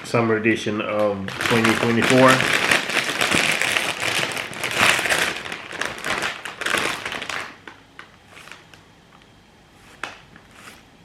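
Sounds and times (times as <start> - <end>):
plastic crisp bag crinkling: 0.9 - 8.8.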